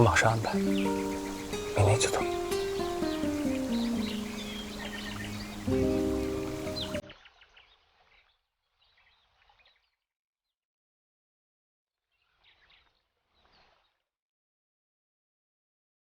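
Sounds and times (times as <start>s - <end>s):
background music: 0.0s - 7.1s
birds chirping: 0.0s - 7.1s.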